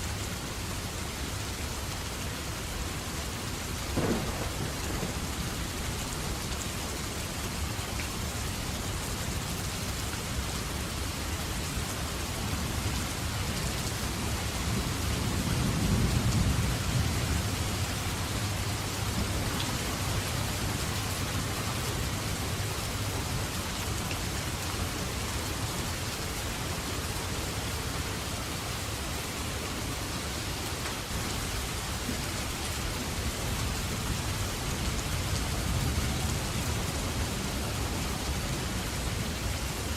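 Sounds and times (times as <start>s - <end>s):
steady rain falling: 0.0s - 39.9s
low rumble of thunder: 3.9s - 6.9s, 14.2s - 22.5s.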